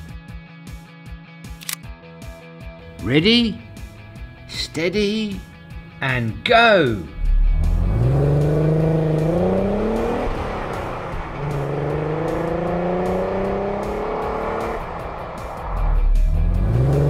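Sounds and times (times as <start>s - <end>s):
race car engine revving: 7.1s - 17.0s.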